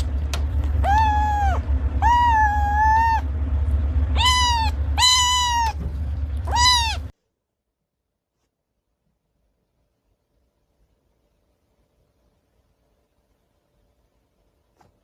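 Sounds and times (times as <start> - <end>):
low steady hum: 0.0 - 15.0
cat meowing: 0.7 - 3.3, 4.1 - 5.8, 6.4 - 7.1.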